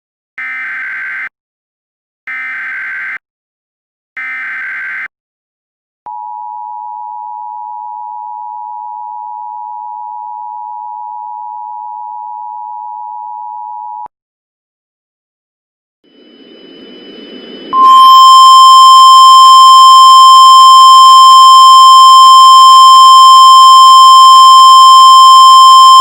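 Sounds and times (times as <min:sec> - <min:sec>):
steady alert tone: 0:16.2 - 0:23.6
data tone bursts: 0:16.2 - 0:26.0.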